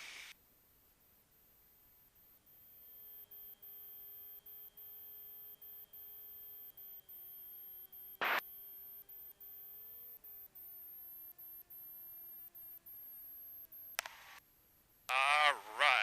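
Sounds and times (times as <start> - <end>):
short sharp burst of noise: 8.2 - 8.4.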